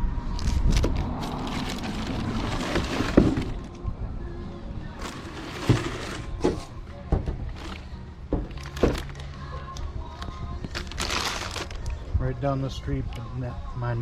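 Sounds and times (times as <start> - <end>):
background music: 0.0 - 14.0.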